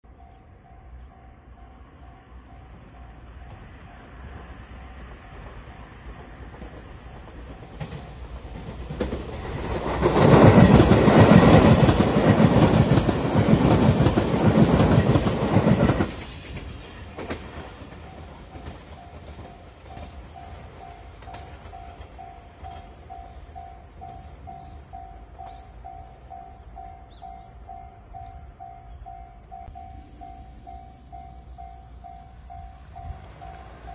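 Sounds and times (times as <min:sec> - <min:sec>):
train wheels clattering: 0:03.5 - 0:26.0.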